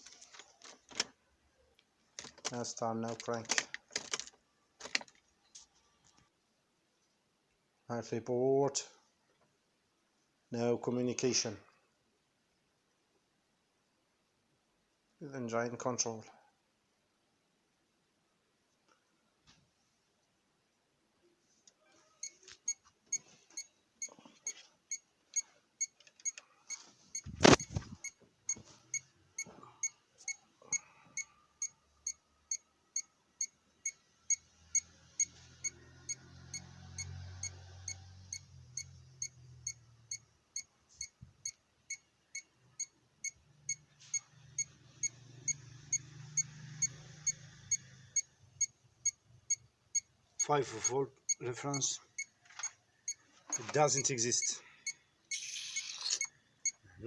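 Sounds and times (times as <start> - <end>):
repeating electronic beep: 55.3 - 56.3.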